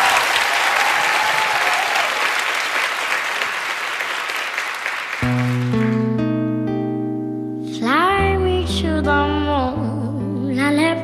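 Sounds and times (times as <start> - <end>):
audience applauding: 0.0 - 6.2.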